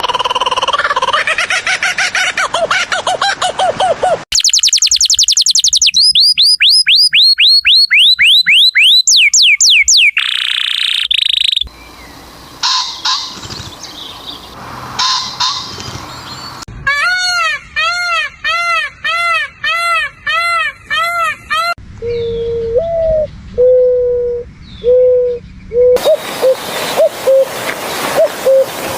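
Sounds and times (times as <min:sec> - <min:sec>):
downslurred whistles: 0:04.3 - 0:11.7
repeated arched call: 0:04.3 - 0:11.7
falling chirps: 0:04.3 - 0:16.7.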